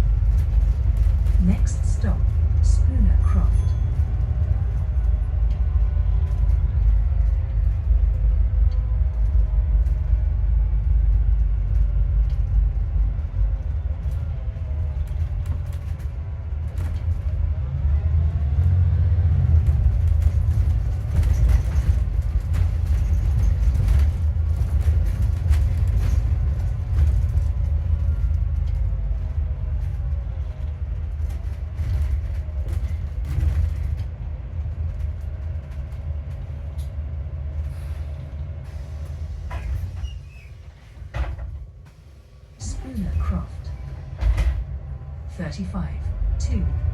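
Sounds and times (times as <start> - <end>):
bus engine and road rumble: 0.0 - 46.9
rattles: 19.5 - 42.2.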